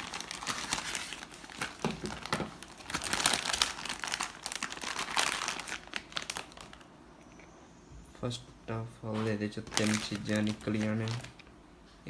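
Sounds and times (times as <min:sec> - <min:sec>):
packaging crinkling and rustling: 0:00.0 - 0:06.9, 0:09.1 - 0:11.5.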